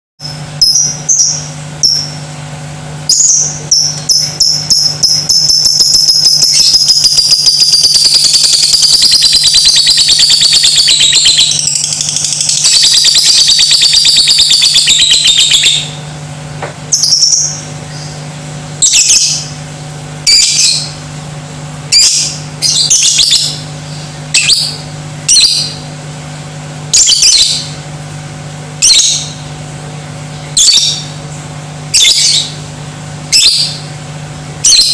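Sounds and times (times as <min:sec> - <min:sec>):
lovebird chattering: 0:03.1 - 0:16.0.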